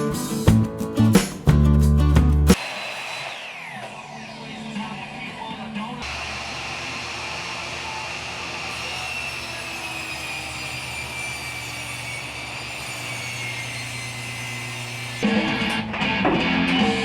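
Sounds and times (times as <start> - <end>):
strummed guitar music: 0.0 - 2.6
power tool whining: 2.6 - 5.3, 6.0 - 15.8.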